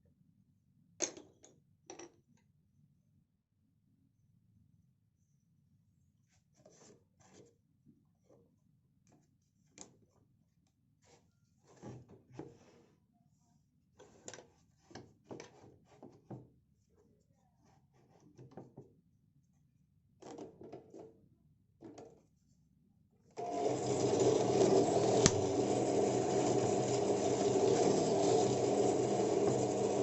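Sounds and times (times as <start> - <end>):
power tool motor running: 23.4 - 30.0.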